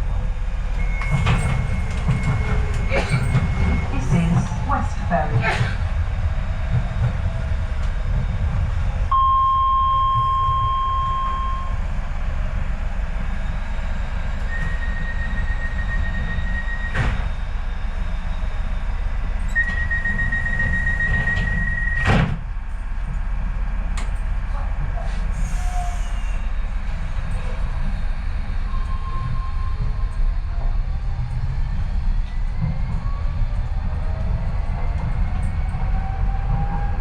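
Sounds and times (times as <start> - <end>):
train low rumble: 0.0 - 37.0
held electronic tone: 9.1 - 11.8.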